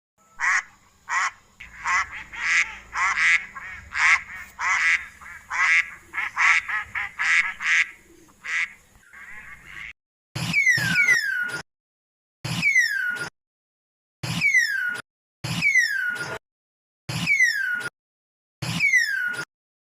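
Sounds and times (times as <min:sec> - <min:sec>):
geese honking: 0:00.4 - 0:09.9
animal call with falling pitch: 0:10.5 - 0:11.6.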